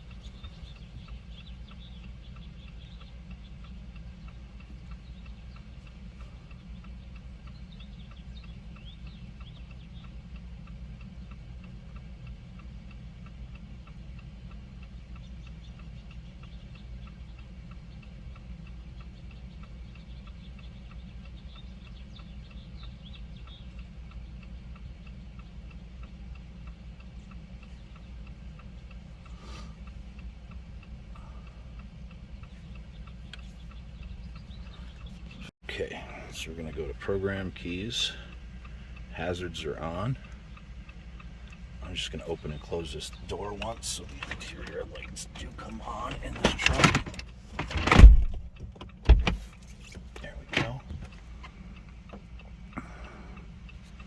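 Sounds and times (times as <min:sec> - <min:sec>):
hazard-light flasher ticking: 0:00.0 - 0:54.0
low steady hum: 0:00.0 - 0:54.0
sharp click: 0:41.5 - 0:53.1.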